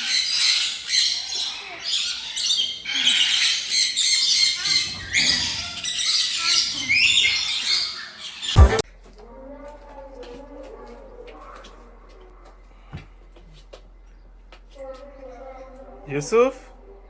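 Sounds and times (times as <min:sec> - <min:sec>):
parrots squawking and chirping: 0:00.0 - 0:08.9, 0:14.0 - 0:17.0.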